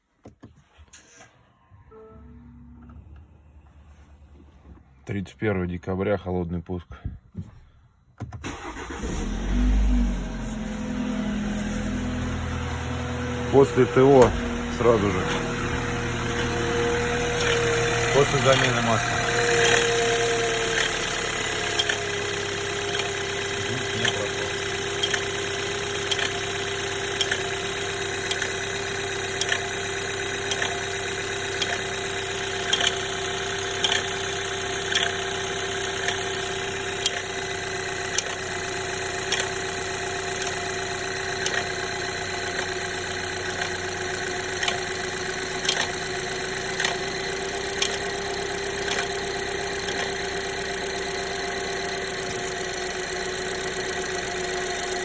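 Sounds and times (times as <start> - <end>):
car engine idling: 0.9 - 5.8, 8.4 - 55.0.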